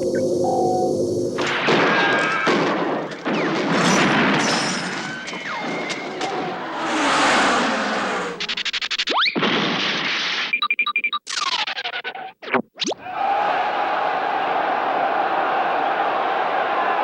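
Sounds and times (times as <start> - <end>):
falling whistle: 4.4 - 6.8
gunfire: 9.4 - 10.4.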